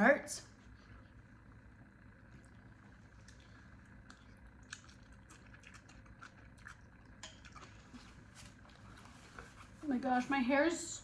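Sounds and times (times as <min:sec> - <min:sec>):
quiet chewing and mouth sounds: 0:00.6 - 0:09.8.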